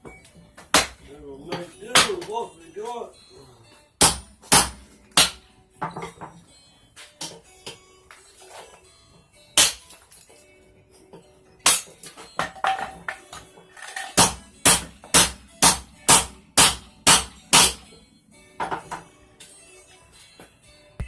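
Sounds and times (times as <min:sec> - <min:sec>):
hammer clanging on metal spike: 0:11.6 - 0:13.4, 0:14.0 - 0:17.9.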